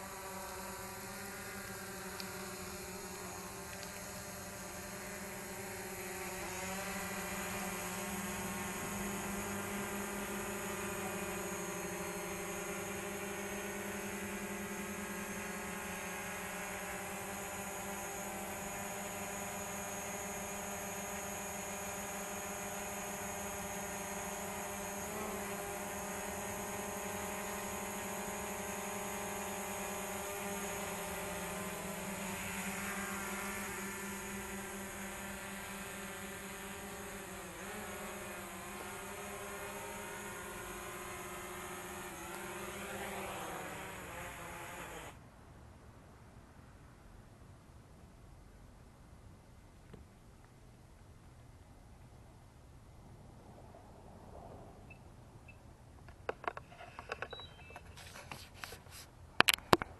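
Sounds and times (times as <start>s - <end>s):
drone propellers buzzing: 0.0s - 45.2s.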